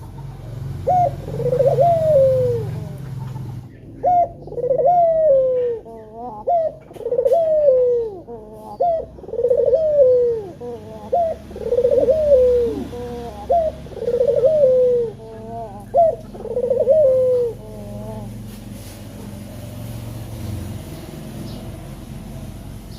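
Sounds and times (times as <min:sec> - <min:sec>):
dove cooing: 0:00.0 - 0:19.4.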